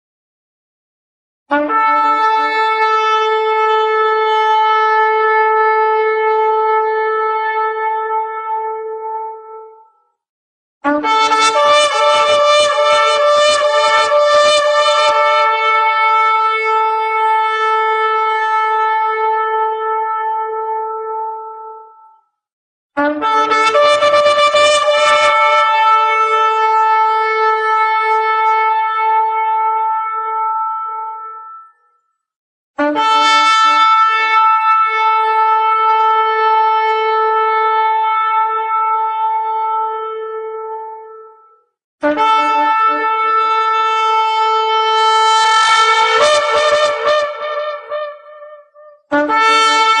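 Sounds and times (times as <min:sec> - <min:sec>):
ram's horn blast: 0:43.9 - 0:50.0.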